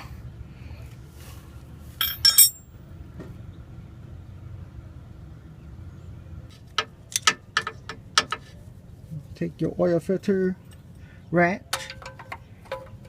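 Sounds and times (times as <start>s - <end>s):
sharp metallic clinks: 2.0s - 2.7s.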